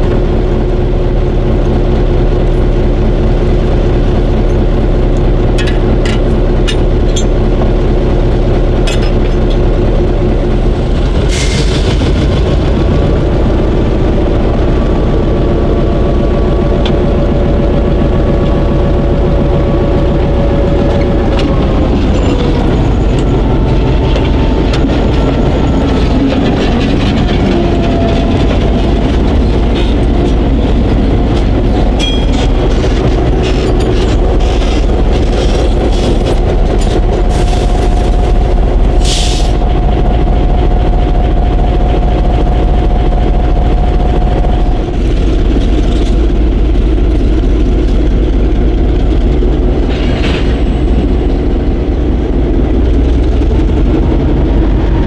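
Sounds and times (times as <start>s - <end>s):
diesel locomotive engine rumbling: 0.0s - 55.0s.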